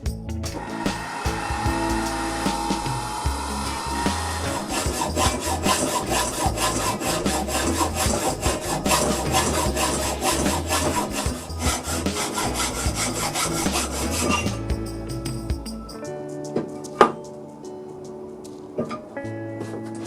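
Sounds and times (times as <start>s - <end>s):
hand tool working wood: 0.7s - 14.8s.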